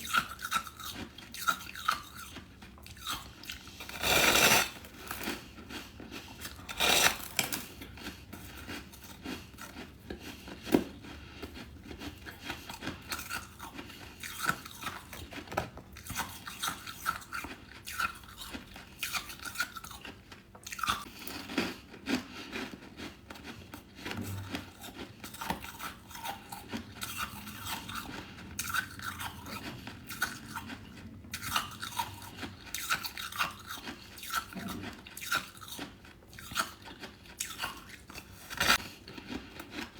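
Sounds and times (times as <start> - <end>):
person crunching frost: 3.8 - 13.6.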